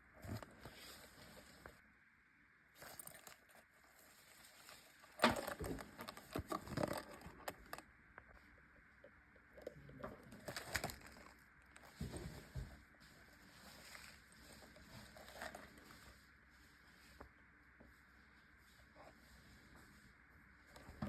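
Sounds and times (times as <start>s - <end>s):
bags rustling: 10.4s - 16.2s.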